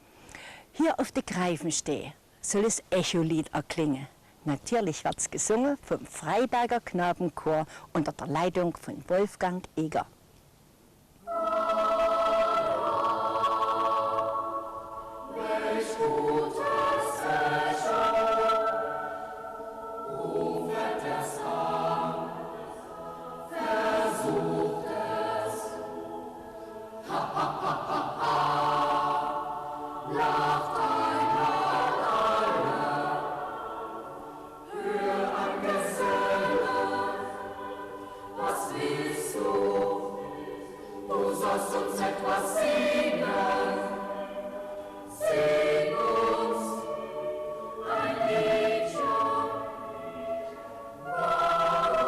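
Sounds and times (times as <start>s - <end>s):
boys' choir singing a cappella: 11.3s - 52.0s.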